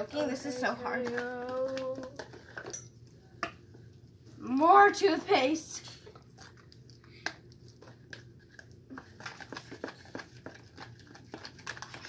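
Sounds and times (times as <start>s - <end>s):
plastic tube clicks and crinkles: 7.2s - 12.0s.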